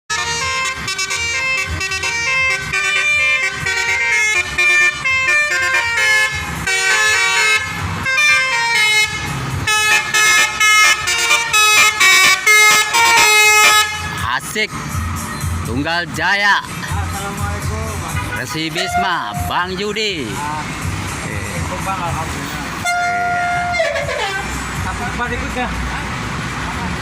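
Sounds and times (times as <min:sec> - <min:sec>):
air horns playing a melody: 0:00.1 - 0:14.3, 0:18.4 - 0:19.8, 0:22.8 - 0:24.6
bus engine running: 0:00.1 - 0:27.0.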